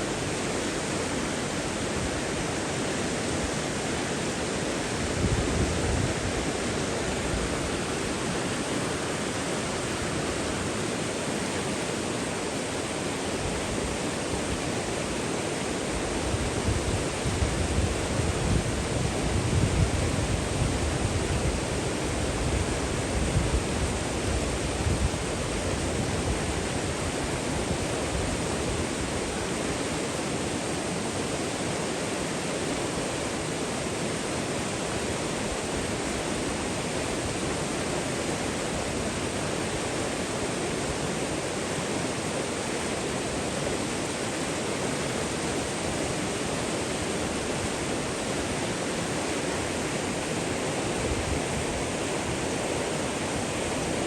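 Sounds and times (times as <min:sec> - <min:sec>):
water rushing: 0:00.0 - 0:54.0.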